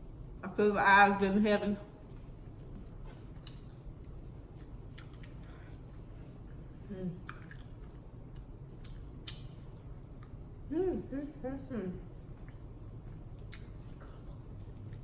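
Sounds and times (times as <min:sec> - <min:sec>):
low hum: 0:00.0 - 0:15.0
chewing food: 0:02.0 - 0:11.4, 0:12.1 - 0:15.0
wet mouth clicks and smacks: 0:04.4 - 0:05.9, 0:07.2 - 0:10.5, 0:13.3 - 0:14.2.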